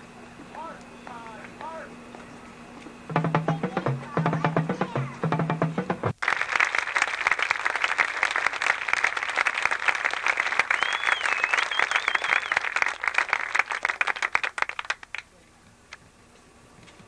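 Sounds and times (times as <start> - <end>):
marching drumline cadence: 3.1 - 6.2
audience applause: 5.8 - 15.2
wavering whistle: 10.7 - 12.7.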